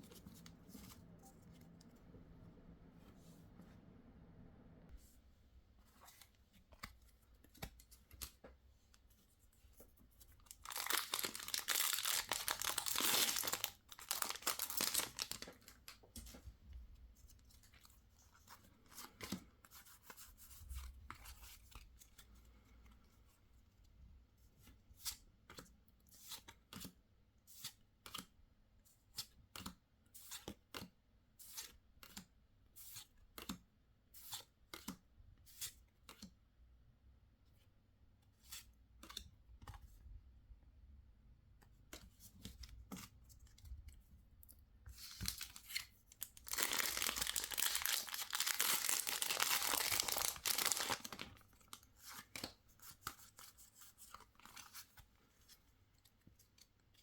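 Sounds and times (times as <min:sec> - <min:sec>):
plastic packaging tearing: 0:10.6 - 0:15.8, 0:45.3 - 0:51.4
sharp clicks of handling cards: 0:38.5 - 0:39.8.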